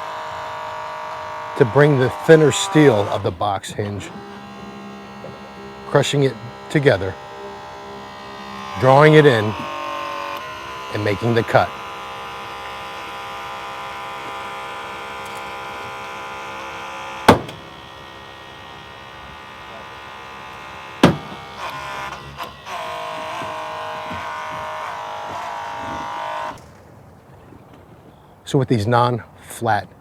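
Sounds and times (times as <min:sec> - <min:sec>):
small knocks: 0:00.0 - 0:28.3
hydraulic pump whining: 0:00.0 - 0:30.0.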